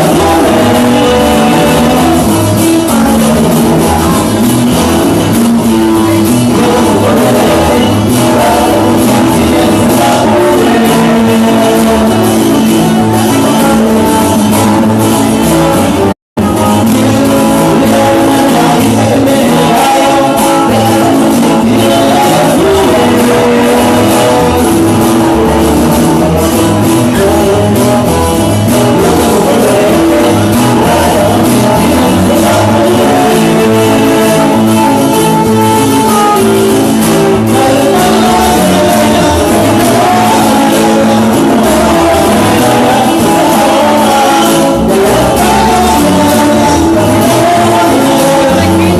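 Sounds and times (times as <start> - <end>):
band playing loud music: 0.0 - 48.9
guitar: 0.0 - 48.9
person singing: 0.0 - 48.9.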